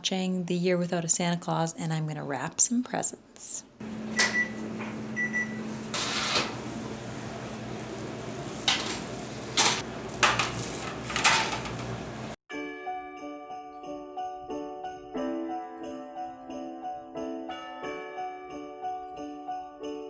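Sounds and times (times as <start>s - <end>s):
kitchen appliance humming: 3.8s - 12.4s
rustling and clattering: 8.5s - 12.0s.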